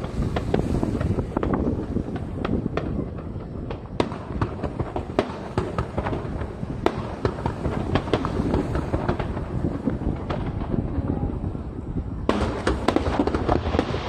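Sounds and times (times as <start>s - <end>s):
fireworks bangs: 0.0s - 14.0s
steady low rumble: 0.0s - 14.0s.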